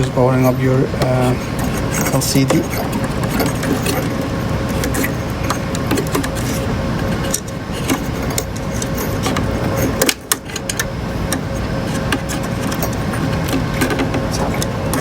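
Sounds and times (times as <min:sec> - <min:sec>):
faint hum: 0:00.0 - 0:15.0
low rumbling background noise: 0:00.0 - 0:15.0
metal and plastic parts clicking: 0:07.3 - 0:15.0.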